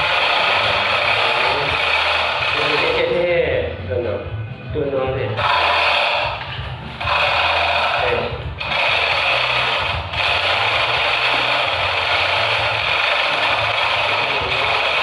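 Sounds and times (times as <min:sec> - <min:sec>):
power tool running: 0:00.0 - 0:03.2, 0:05.4 - 0:15.0.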